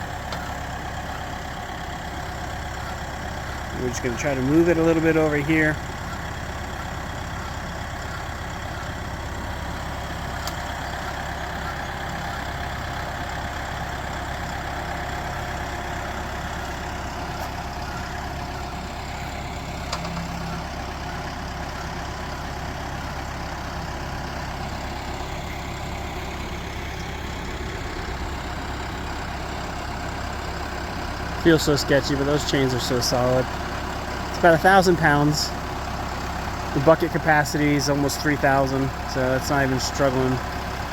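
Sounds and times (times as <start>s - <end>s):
tractor engine running: 0.0s - 40.9s.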